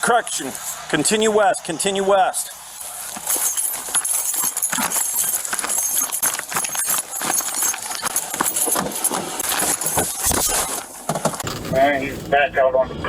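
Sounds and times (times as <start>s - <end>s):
running footsteps: 2.4s - 12.3s
clothing and gear rustling: 2.6s - 12.4s.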